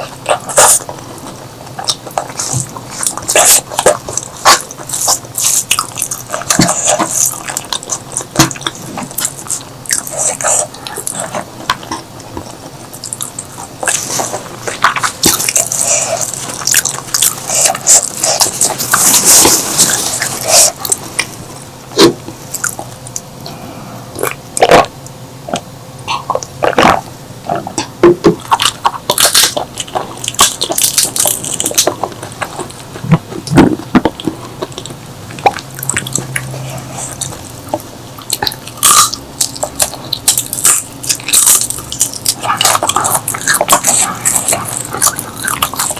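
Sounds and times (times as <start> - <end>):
chewing and biting: 0.0 - 23.3, 24.2 - 45.9
wet mouth clicks and crackles: 27.8 - 45.9.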